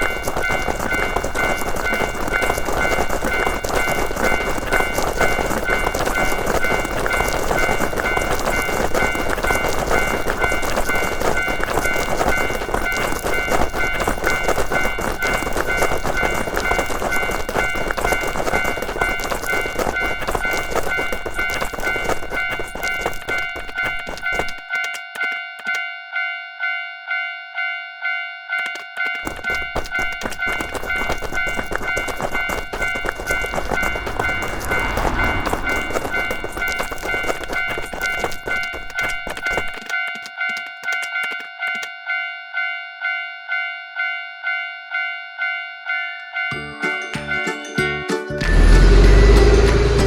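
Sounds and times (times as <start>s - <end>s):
train rumble and wheel clatter: 0.0s - 24.7s, 29.5s - 39.9s, 46.6s - 50.0s
railroad crossing bell ringing: 0.0s - 39.0s, 39.8s - 50.0s.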